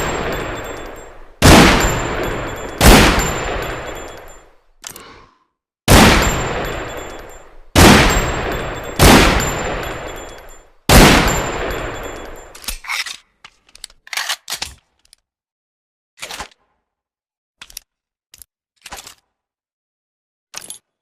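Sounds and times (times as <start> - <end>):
pistol shots with echo: 0.0 - 4.4, 5.9 - 12.5
metallic clicks of pistol mechanism: 12.3 - 15.3.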